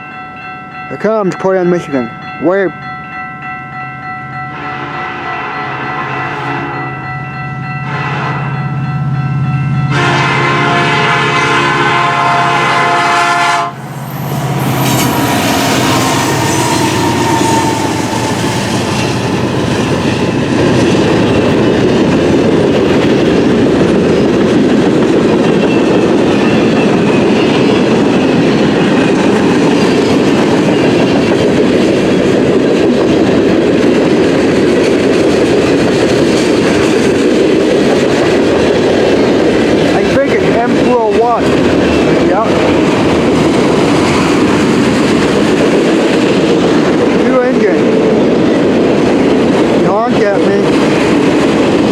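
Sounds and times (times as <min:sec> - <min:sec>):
freight train cars rumbling: 0:00.0 - 0:51.9
train horn blast: 0:04.5 - 0:07.0, 0:07.8 - 0:08.7, 0:09.8 - 0:20.4.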